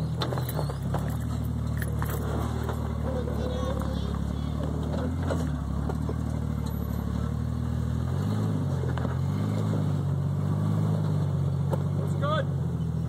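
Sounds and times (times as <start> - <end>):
engine running at low revs: 0.0 - 13.0.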